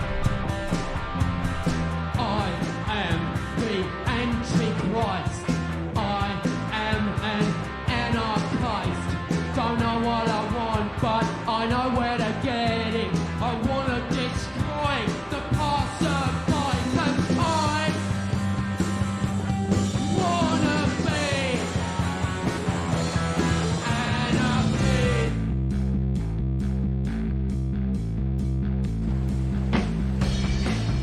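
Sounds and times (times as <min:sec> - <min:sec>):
punk rock band playing: 0:00.0 - 0:25.5, 0:29.0 - 0:31.0
person singing: 0:02.1 - 0:18.2, 0:20.0 - 0:22.2, 0:23.3 - 0:25.4.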